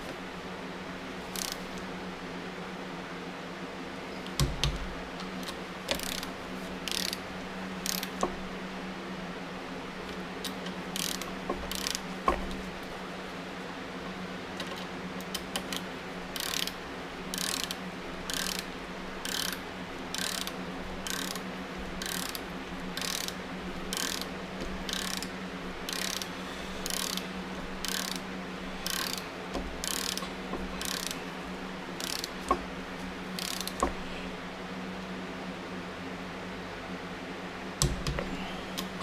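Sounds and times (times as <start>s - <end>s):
ratchet wrench clicking: 1.3s - 1.6s, 5.4s - 7.2s, 7.8s - 8.3s, 10.4s - 12.6s, 14.6s - 28.2s, 28.8s - 31.2s, 32.0s - 32.6s, 33.4s - 34.0s.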